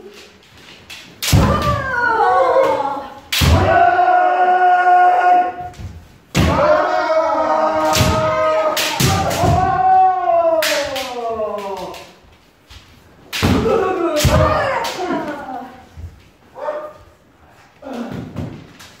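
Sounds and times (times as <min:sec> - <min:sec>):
bamboo sword strike: 0:07.8 - 0:09.8.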